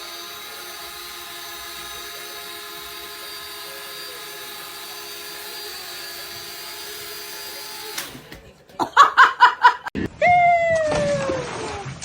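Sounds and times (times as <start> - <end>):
machine whining: 0.0 - 8.4.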